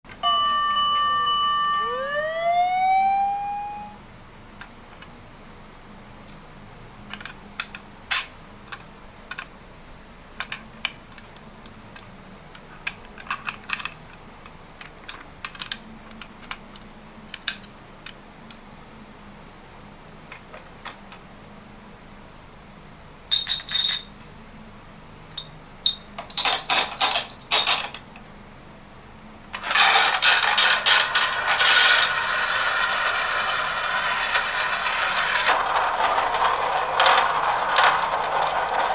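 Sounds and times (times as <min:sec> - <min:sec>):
marbles clattering on wooden run: 0:29.6 - 0:38.9.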